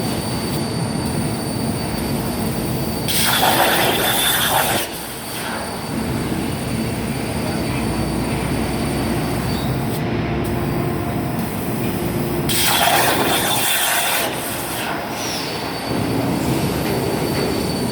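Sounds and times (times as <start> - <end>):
faint high whining tones: 0.0 - 12.4
plasma arc hissing: 2.2 - 7.1, 8.0 - 16.0.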